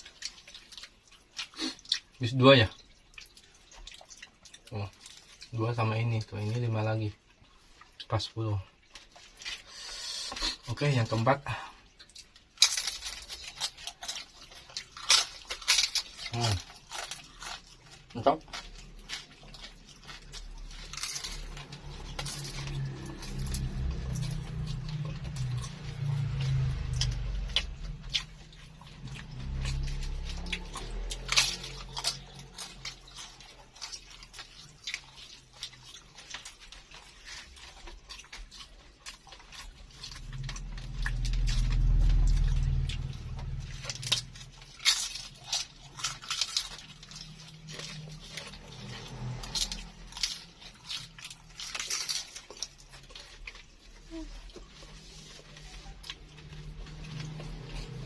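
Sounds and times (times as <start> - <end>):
chewing crispy food: 0.0 - 58.0
low rumble: 18.6 - 33.7, 39.4 - 51.9.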